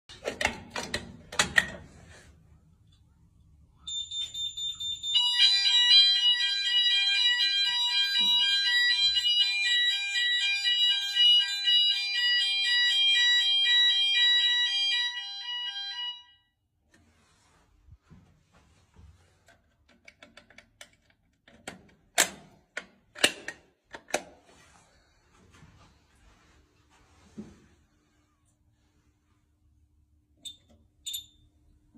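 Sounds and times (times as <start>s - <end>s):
shrill fire alarm tone: 3.8s - 16.6s.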